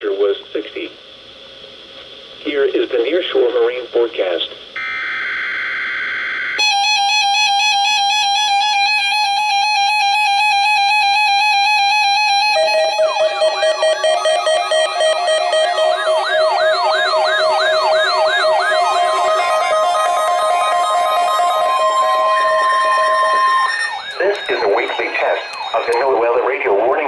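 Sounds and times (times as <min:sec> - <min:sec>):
warbling alarm: 0:04.8 - 0:27.0
electronic attention tone: 0:12.2 - 0:26.4.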